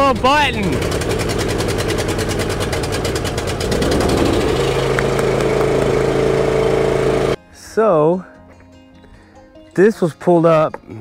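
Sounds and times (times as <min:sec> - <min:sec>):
lawn mower engine running: 0:00.3 - 0:07.4.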